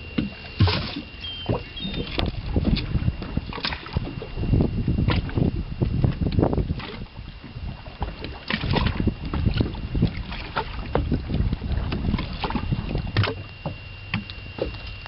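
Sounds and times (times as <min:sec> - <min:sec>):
water slapping boat hull: 0:00.0 - 0:15.0
wind buffeting microphone: 0:01.5 - 0:13.5.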